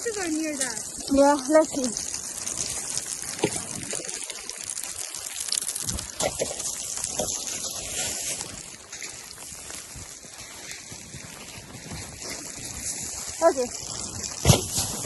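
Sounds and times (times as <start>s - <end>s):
snow crunching and scraping: 5.8s - 15.0s.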